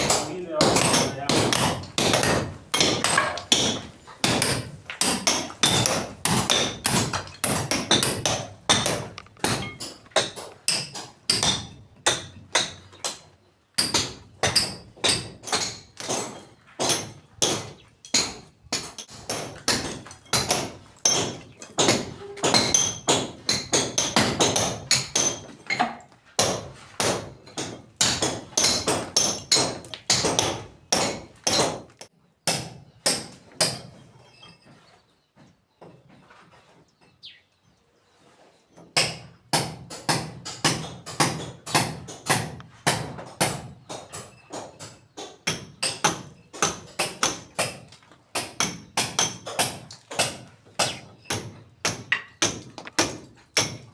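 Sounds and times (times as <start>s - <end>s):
hammer striking: 0.0s - 12.8s.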